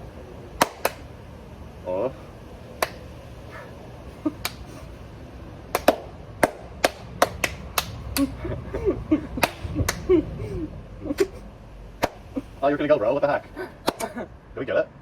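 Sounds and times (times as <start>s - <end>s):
hand claps: 0.6s - 1.1s, 2.8s - 3.1s, 4.3s - 4.7s, 5.7s - 8.4s, 9.4s - 10.1s, 12.0s - 12.2s, 13.8s - 14.1s.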